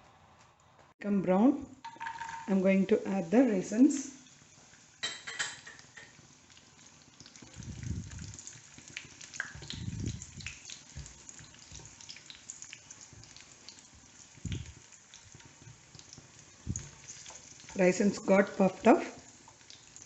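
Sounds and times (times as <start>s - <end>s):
nuts sizzling in a pan: 1.8s - 20.0s
small crackles and pops: 5.8s - 17.8s, 19.2s - 20.0s.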